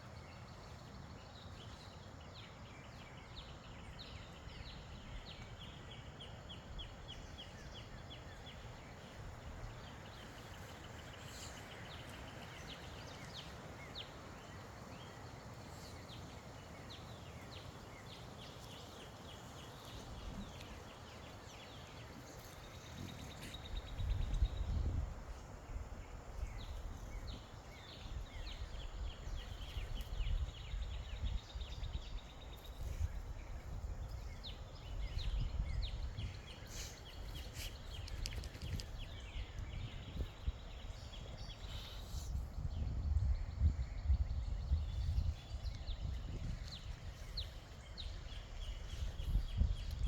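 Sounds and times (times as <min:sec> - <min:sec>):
wind buffeting the microphone: 0:01.1 - 0:50.0.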